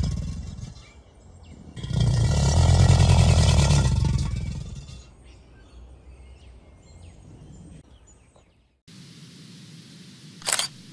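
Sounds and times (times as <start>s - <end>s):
alligators bellowing: 1.8s - 5.1s
steady hiss: 8.9s - 10.9s.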